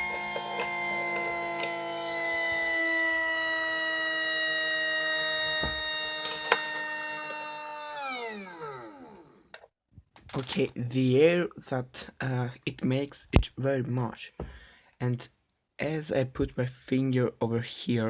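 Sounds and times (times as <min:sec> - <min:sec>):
electric motor whining: 0:00.0 - 0:09.5.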